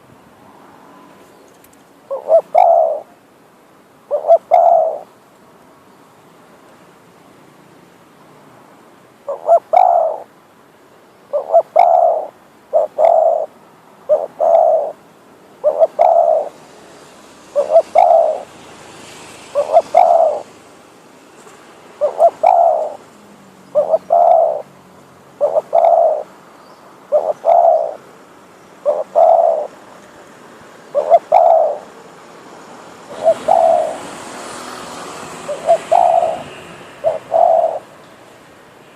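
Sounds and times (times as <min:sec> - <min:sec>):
dove cooing: 0:02.1 - 0:03.2, 0:04.1 - 0:05.1, 0:09.3 - 0:10.3, 0:11.3 - 0:15.0, 0:15.6 - 0:16.6, 0:17.5 - 0:18.5, 0:19.5 - 0:20.6, 0:22.0 - 0:23.1, 0:23.7 - 0:24.7, 0:25.4 - 0:26.3, 0:27.1 - 0:28.1, 0:28.8 - 0:29.8, 0:30.9 - 0:32.0, 0:33.1 - 0:34.3, 0:35.2 - 0:38.0.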